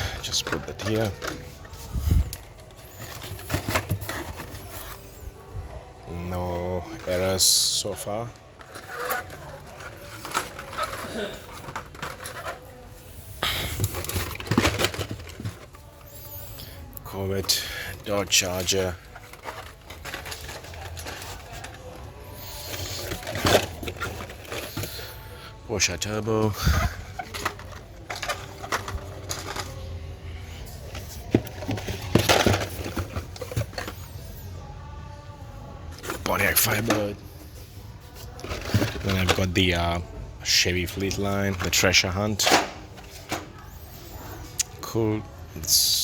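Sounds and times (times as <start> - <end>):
plastic packaging clicking and rustling: 0.0 - 5.2, 6.9 - 12.8, 13.4 - 25.3, 26.6 - 34.4, 38.0 - 40.0.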